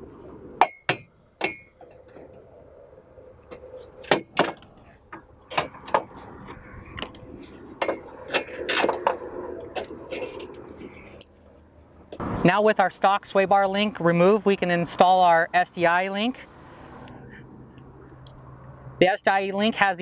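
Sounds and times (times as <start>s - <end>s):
metal tools clinking: 7.8s - 11.6s.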